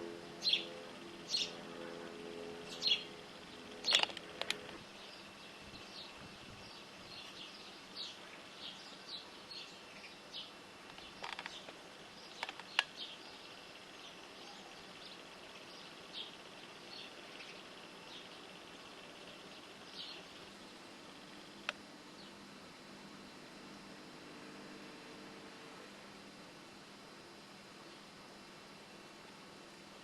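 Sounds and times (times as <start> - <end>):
small birds chirping: 0.4 - 1.6, 2.6 - 23.4
sharp clicks: 3.7 - 4.8, 10.8 - 13.0, 21.6 - 21.8.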